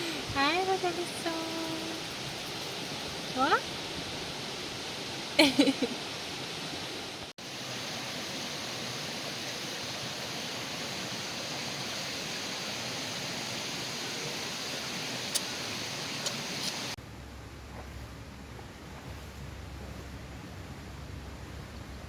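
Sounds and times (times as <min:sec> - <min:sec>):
stream water flowing: 0:00.0 - 0:17.0.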